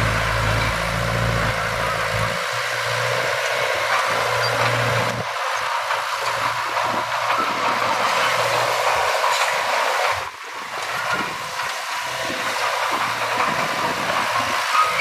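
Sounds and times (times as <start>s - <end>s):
heavy machinery running: 0.0s - 15.0s.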